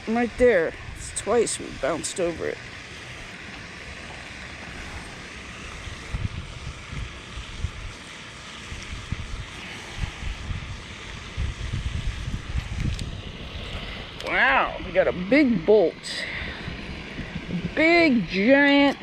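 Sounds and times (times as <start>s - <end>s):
wind buffeting microphone: 0.0s - 8.0s, 8.6s - 19.0s.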